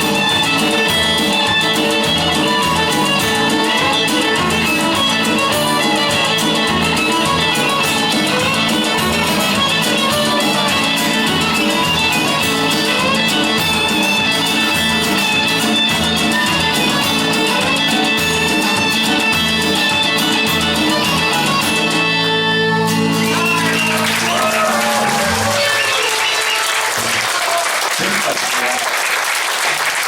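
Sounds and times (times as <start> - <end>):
guitar-driven rock music: 0.0 - 26.6
crowd cheering: 22.9 - 30.0.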